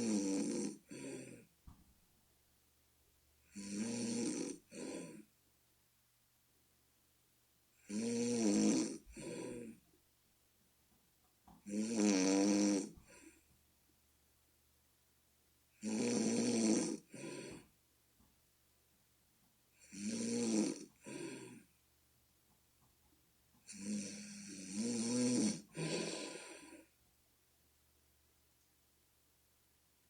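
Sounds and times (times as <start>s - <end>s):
person snoring loudly: 0.0s - 1.5s, 3.4s - 5.3s, 7.8s - 9.8s, 11.6s - 13.3s, 15.8s - 17.6s, 19.8s - 21.6s, 23.7s - 26.9s.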